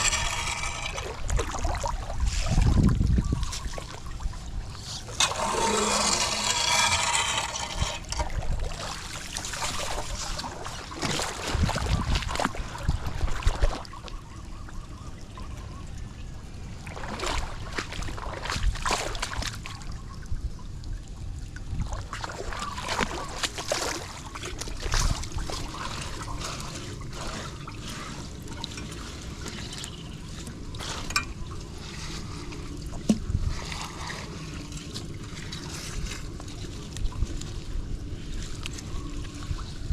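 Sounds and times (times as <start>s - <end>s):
water trickling into street drain: 0.0s - 39.9s
knocks and splashes: 5.1s - 13.9s, 16.8s - 19.8s, 21.8s - 31.5s, 32.9s - 37.4s.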